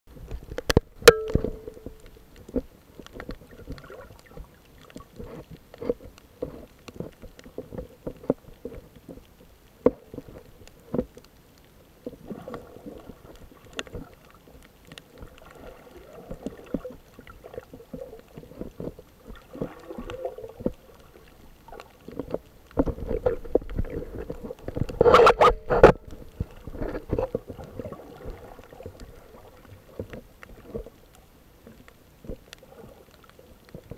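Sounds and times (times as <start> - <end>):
muffled water sloshing: 0.1 - 33.9
clicks and knocks: 0.6 - 2.2.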